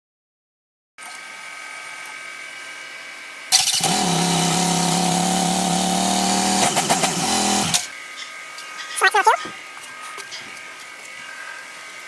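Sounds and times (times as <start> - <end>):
motorcycle engine starting and running: 3.5 - 8.0.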